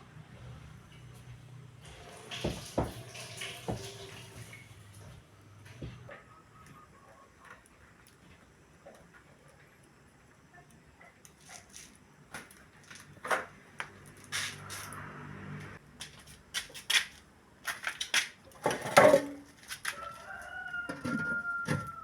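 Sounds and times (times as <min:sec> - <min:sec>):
chickens clucking: 0:05.8 - 0:08.0
rooster crowing: 0:19.9 - 0:22.0.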